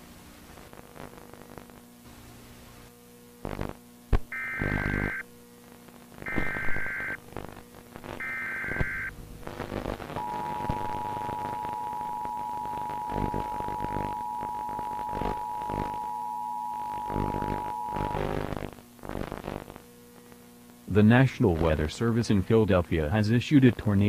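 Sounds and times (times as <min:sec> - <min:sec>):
buzzy digital header bursts: 0:03.5 - 0:05.2, 0:06.2 - 0:07.2, 0:08.1 - 0:19.8
two-tone attention signal: 0:10.2 - 0:18.2.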